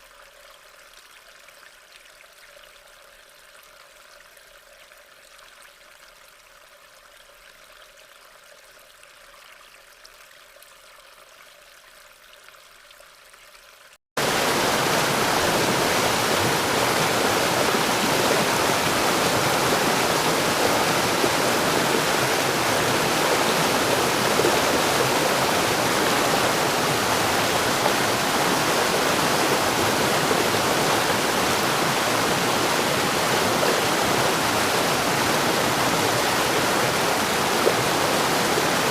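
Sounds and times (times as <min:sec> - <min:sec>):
water rushing: 0:14.2 - 0:38.9.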